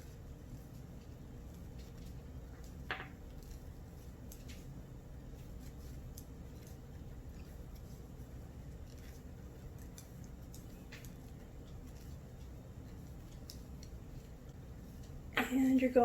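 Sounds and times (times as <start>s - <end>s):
low steady hum: 0.0s - 16.0s
knitting needles clicking: 8.7s - 14.3s.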